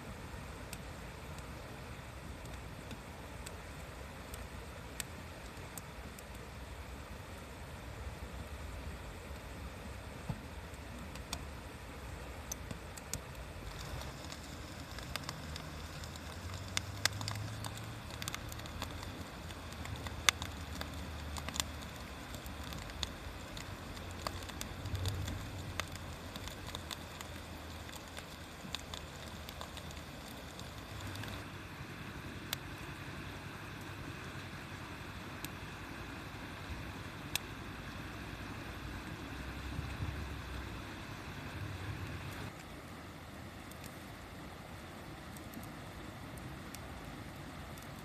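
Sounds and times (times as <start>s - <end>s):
steady low rumble: 0.0s - 48.0s
wood fire crackling: 0.0s - 48.0s
sharp pops and snaps: 2.4s - 6.5s, 10.2s - 11.5s, 12.2s - 31.5s, 36.4s - 38.0s.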